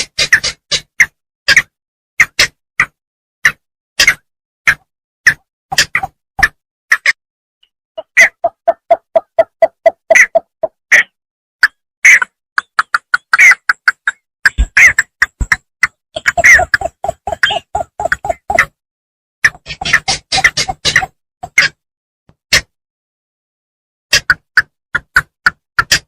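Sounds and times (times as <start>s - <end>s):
bittern calling: 8.0s - 11.2s, 16.2s - 18.7s.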